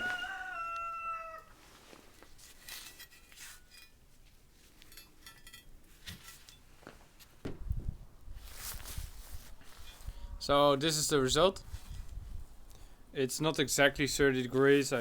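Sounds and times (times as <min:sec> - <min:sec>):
light metallic clinks: 0:04.8 - 0:06.7
low thump: 0:07.4 - 0:08.0.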